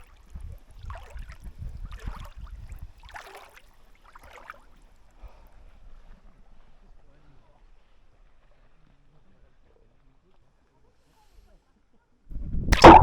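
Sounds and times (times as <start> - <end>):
water splashing: 0.0 - 4.6, 12.7 - 13.0
wind on microphone: 0.3 - 3.0, 12.3 - 13.0.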